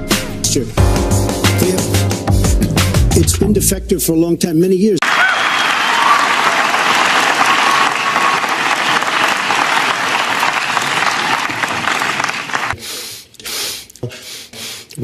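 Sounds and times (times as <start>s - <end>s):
audience applauding: 5.0s - 12.8s
man sniffing: 12.7s - 15.0s.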